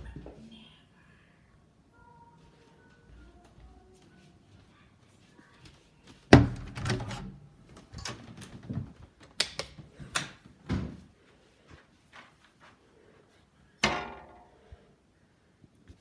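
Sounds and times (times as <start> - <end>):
household knocks and clunks: 6.3 - 7.4.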